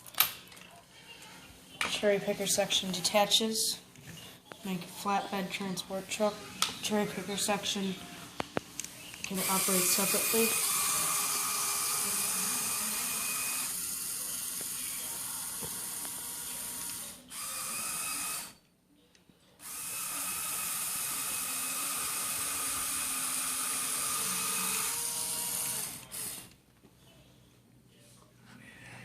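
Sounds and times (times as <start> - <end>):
electric motors whirring through gears: 9.2 - 18.6, 19.6 - 26.5.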